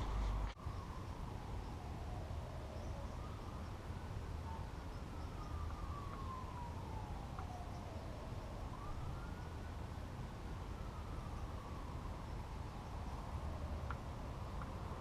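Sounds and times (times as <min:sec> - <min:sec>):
faint siren wailing: 0:00.0 - 0:15.0.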